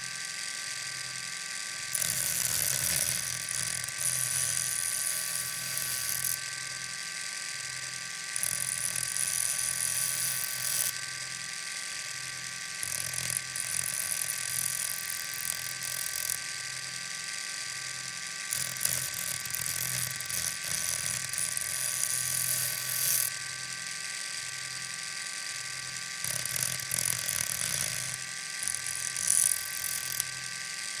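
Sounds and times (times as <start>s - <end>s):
electric motor whine: 0.0s - 31.0s
knife grinding hiss: 1.9s - 6.4s, 8.4s - 11.0s, 18.5s - 23.3s, 26.2s - 30.3s.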